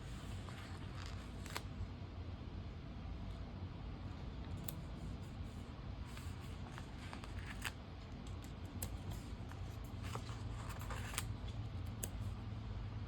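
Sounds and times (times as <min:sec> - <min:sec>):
low steady hum: 0:00.0 - 0:13.0
paper stickers rustling: 0:05.0 - 0:12.3.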